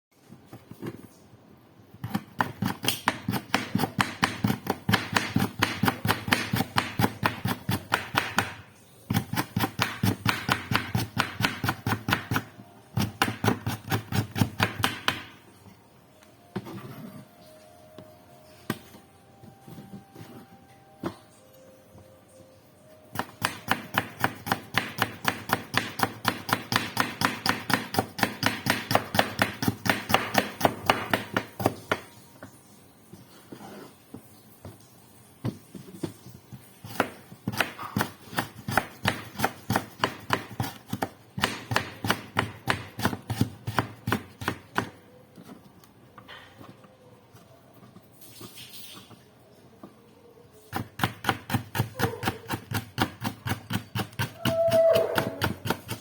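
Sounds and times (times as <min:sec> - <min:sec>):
knife chopping on cutting board: 0:02.0 - 0:15.3, 0:23.2 - 0:32.0, 0:36.8 - 0:45.0, 0:50.7 - 0:56.0.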